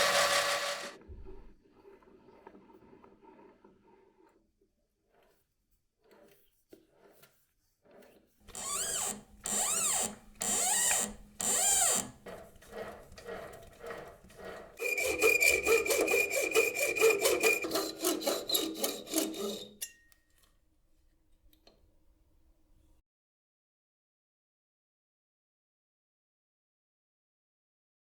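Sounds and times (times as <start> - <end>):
file rasping wood: 0.0 - 1.0, 6.1 - 19.9.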